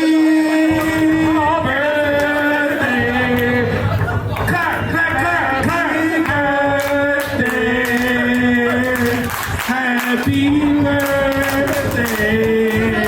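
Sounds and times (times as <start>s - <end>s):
person singing long notes: 0.0s - 4.0s.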